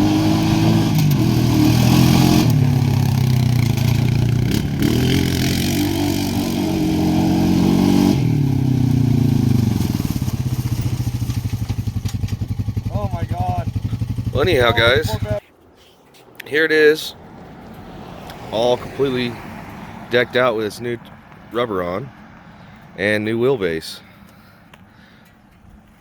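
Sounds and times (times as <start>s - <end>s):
atv engine revving and idling: 0.0s - 15.4s.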